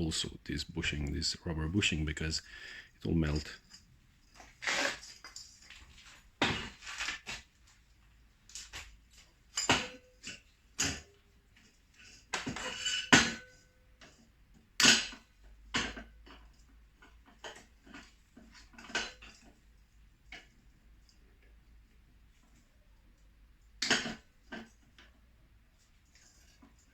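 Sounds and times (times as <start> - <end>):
metal tools clinking and knocking: 3.0 - 7.2.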